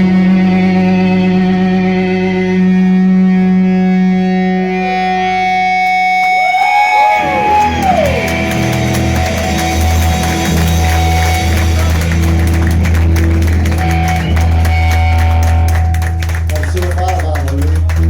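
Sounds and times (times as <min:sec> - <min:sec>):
pulsing bass rhythm: 0:00.0 - 0:06.4, 0:07.0 - 0:18.0
electric guitar: 0:00.0 - 0:18.0
live rock band: 0:00.0 - 0:18.0.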